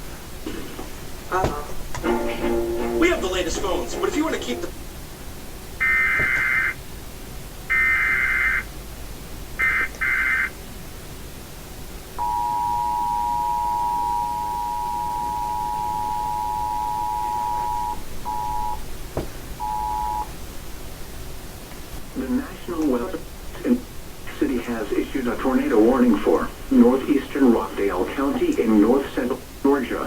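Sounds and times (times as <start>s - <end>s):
digital data tone bursts: 5.8s - 6.8s, 7.7s - 8.7s, 12.2s - 18.8s, 19.6s - 20.3s
two-tone attention signal: 12.2s - 18.8s, 19.6s - 20.3s.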